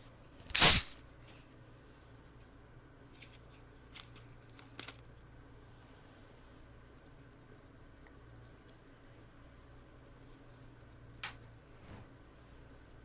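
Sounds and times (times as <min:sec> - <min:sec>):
drink can hissing open: 0:00.5 - 0:00.9.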